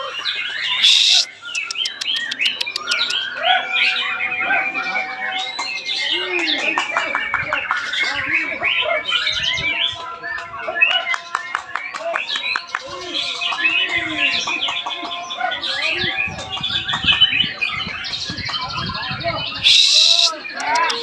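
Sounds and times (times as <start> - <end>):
birds singing whistled phrases and trills: 0.0 - 21.0
harsh bird call burst: 0.6 - 3.2, 19.6 - 20.9.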